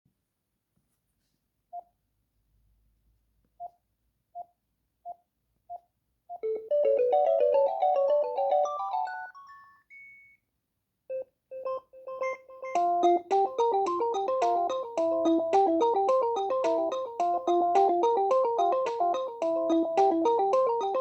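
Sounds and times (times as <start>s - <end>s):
electronic ringtone melody: 6.4s - 10.3s, 11.1s - 21.0s
cordless phone beeps: 9.9s - 10.4s.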